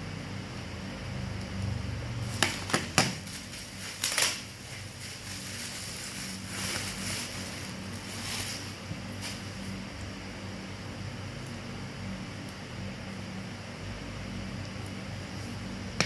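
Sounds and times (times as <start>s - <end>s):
steady low hum: 0.0s - 16.0s
crinkling rustle: 2.2s - 9.9s.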